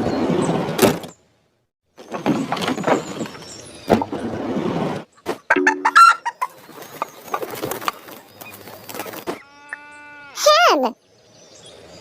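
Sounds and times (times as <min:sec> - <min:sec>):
chickens clucking and squawking: 0:05.2 - 0:09.8
loud chicken call: 0:05.5 - 0:06.5, 0:09.3 - 0:10.5.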